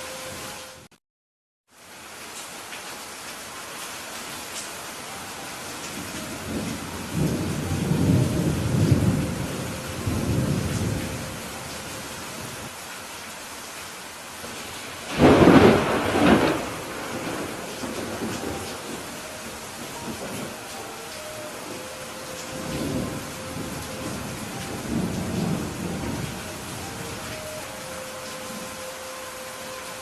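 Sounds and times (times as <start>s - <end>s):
steady rain: 0.0s - 0.9s, 1.7s - 30.0s
rolling thunder: 6.4s - 11.5s, 15.1s - 20.7s, 21.7s - 27.1s.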